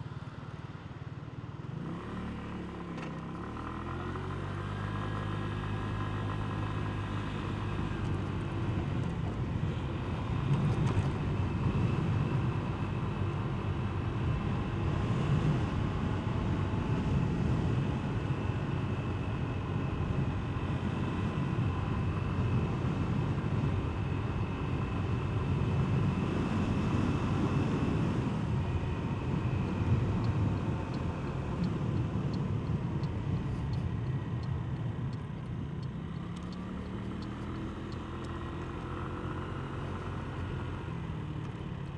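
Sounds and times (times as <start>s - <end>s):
light regular ticking: 30.2s - 38.9s.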